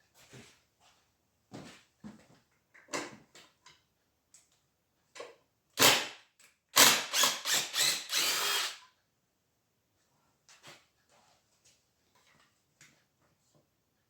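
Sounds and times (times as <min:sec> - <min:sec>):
cordless drill running: 0:06.8 - 0:08.8.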